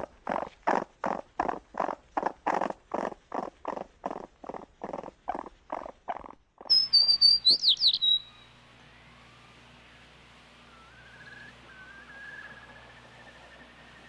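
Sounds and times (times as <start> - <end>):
animal harsh calls: 0.0 - 8.4
bird whistled song with trills: 6.6 - 9.4, 10.5 - 14.0.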